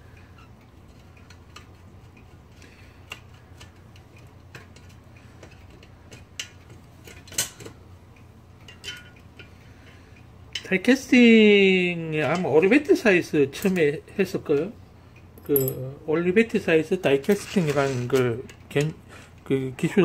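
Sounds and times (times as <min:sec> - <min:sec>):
steady low hum: 0:00.0 - 0:20.0
light metallic clicks and clinks: 0:08.6 - 0:10.8, 0:15.2 - 0:16.0.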